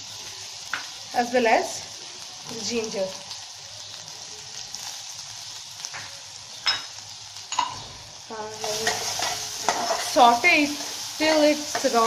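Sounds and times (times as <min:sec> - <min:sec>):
garlic sizzling in hot oil: 0:00.0 - 0:12.0.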